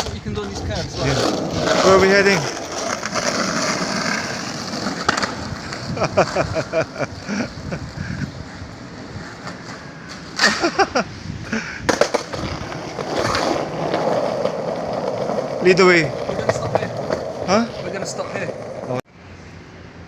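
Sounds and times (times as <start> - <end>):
skateboard clacks: 0.0 - 6.6, 11.8 - 18.9
skate wheels rolling on paving: 0.0 - 19.0.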